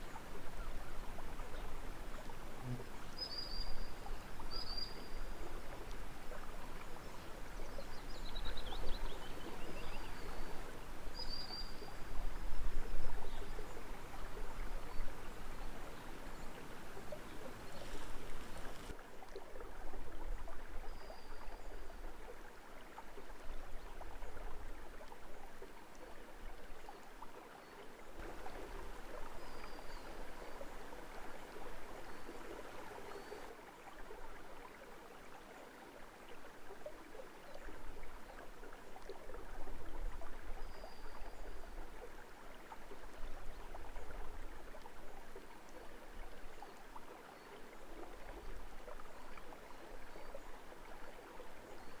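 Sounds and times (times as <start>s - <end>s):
stream water trickling: 0.0s - 52.0s
faint bird chirps: 2.6s - 5.3s.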